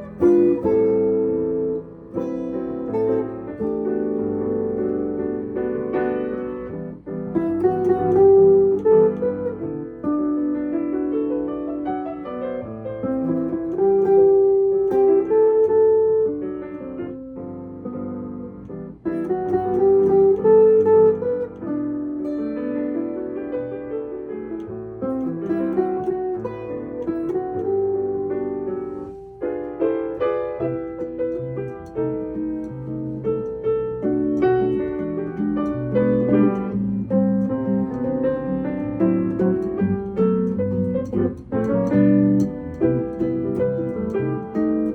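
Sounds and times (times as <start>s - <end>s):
keyboard music: 0.0s - 5.4s, 6.2s - 10.5s, 18.2s - 22.6s
instrumental duet with piano: 0.0s - 44.9s.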